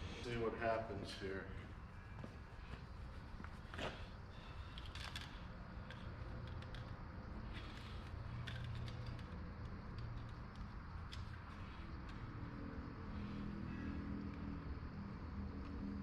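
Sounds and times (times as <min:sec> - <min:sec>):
faint low hum: 0:00.0 - 0:16.0
objects being handled clicking: 0:04.6 - 0:12.4.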